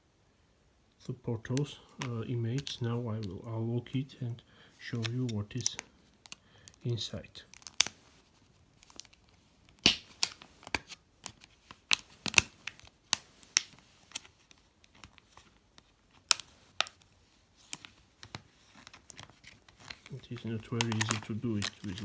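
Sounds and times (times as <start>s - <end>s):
packaging clicks: 1.4s - 3.4s, 4.8s - 8.0s, 8.8s - 22.0s
packaging rustling: 4.8s - 22.0s.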